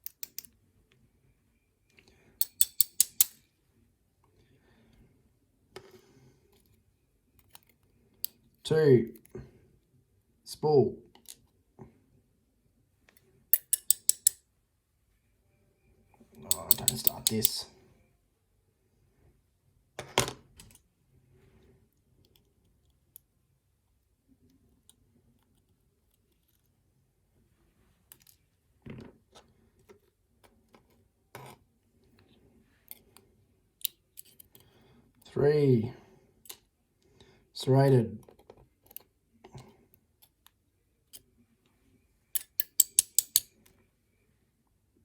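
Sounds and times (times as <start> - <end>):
metal lock parts clicking: 0.0 - 0.6, 2.4 - 3.4, 13.6 - 14.4, 16.5 - 17.6, 42.4 - 43.6.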